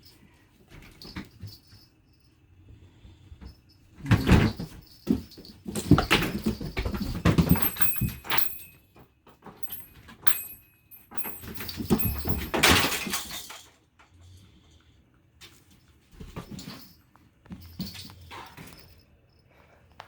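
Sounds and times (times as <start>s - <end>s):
monkeys playing with toys: 4.0s - 14.2s
high metallic rings: 7.5s - 13.2s.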